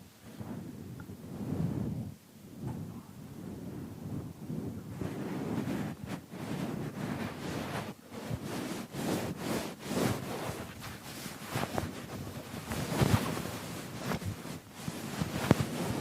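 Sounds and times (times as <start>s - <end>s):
keyboard being scrubbed: 5.6s - 16.0s.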